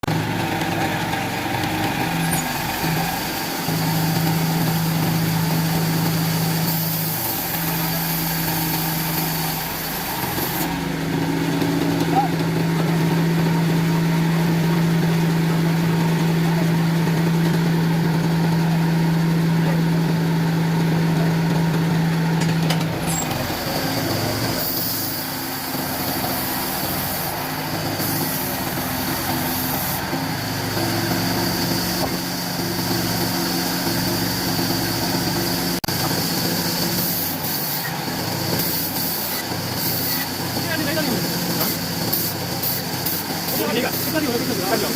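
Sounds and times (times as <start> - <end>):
high whine: 0.0 - 27.5
wood-cutting machine motor humming: 0.0 - 44.9.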